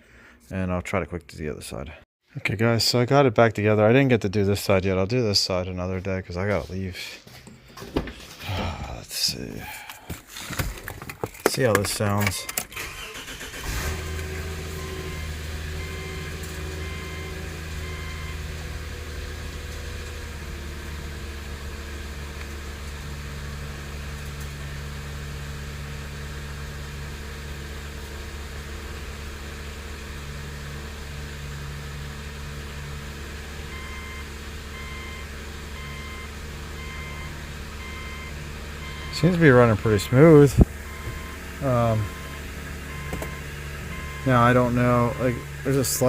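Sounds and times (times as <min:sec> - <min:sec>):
car engine idling: 0:11.6 - 0:46.0
car warning chime beeps: 0:12.2 - 0:12.7, 0:14.7 - 0:18.5, 0:33.7 - 0:46.0.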